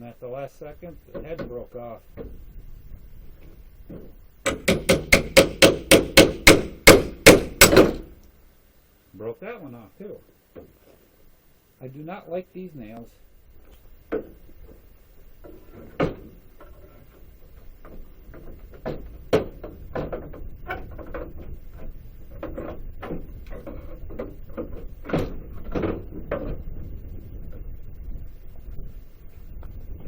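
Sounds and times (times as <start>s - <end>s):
hammer knocking on wood: 3.9s - 8.2s, 17.8s - 20.4s.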